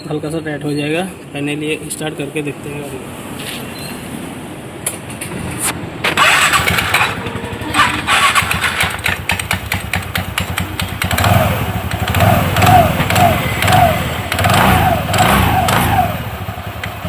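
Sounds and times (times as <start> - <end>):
scooter engine running: 6.0 - 17.0.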